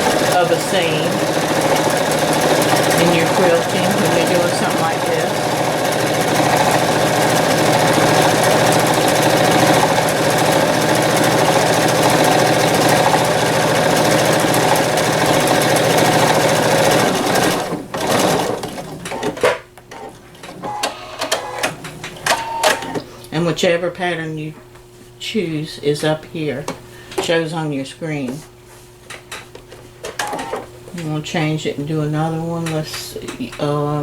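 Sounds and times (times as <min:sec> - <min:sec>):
sewing machine stitching: 0:00.0 - 0:23.0, 0:30.2 - 0:30.6.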